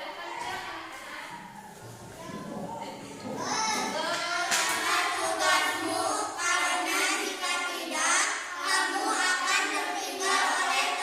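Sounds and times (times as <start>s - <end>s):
children singing: 3.2s - 11.0s.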